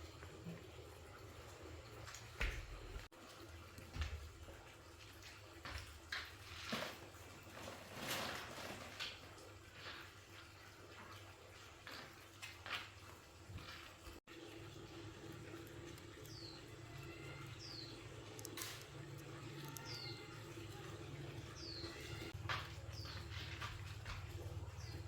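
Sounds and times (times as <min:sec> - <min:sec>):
rustling scrape: 0:06.6 - 0:09.2.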